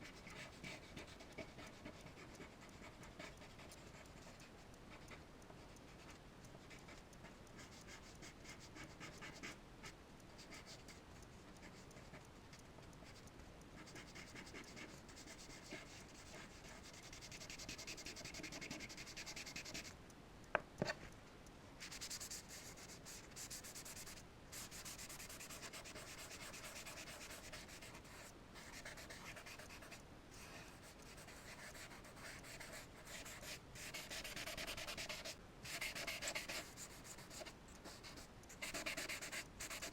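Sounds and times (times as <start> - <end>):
charcoal scratching on paper: 13.8 - 19.9, 21.8 - 39.9.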